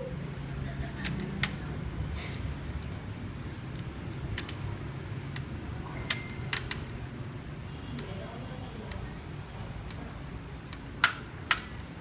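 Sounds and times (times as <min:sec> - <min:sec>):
clicks and taps of tools: 0:03.7 - 0:04.6, 0:10.7 - 0:11.7.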